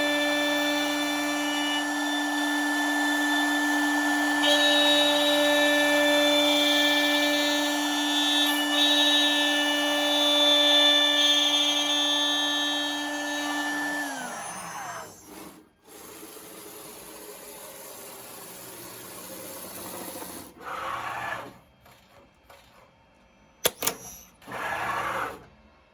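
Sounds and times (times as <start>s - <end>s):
router spindle whine: 0.0s - 19.2s.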